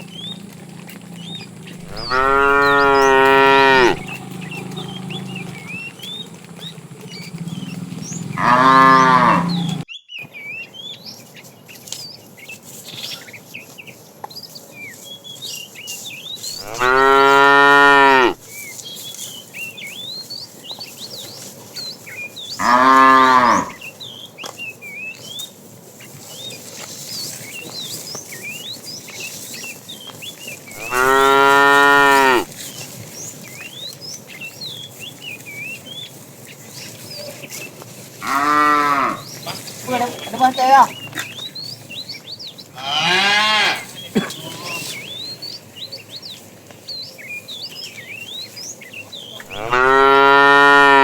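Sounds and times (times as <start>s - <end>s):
small birds chirping: 0.0s - 51.0s
cow mooing: 1.2s - 9.8s, 16.6s - 18.4s, 22.6s - 23.8s, 30.8s - 32.5s, 38.2s - 39.3s, 42.8s - 44.9s, 49.4s - 51.0s.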